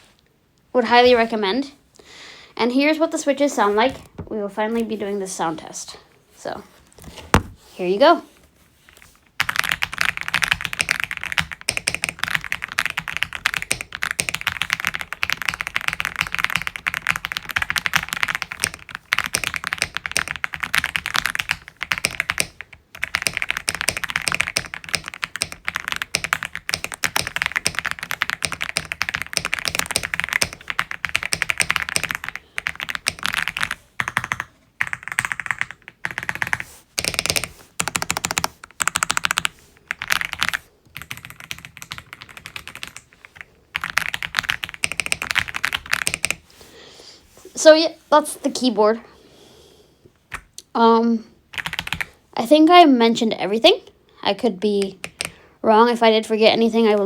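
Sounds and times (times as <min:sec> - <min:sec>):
mechanical keyboard typing: 0:09.4 - 0:46.4, 0:51.6 - 0:52.1, 0:54.9 - 0:55.4.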